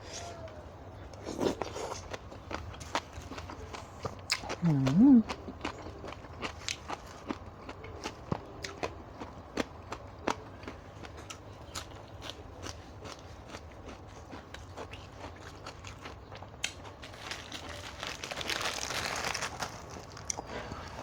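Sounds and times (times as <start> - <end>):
eating clicks and crunches: 1.1 - 20.5
crinkling rustling: 17.0 - 21.0.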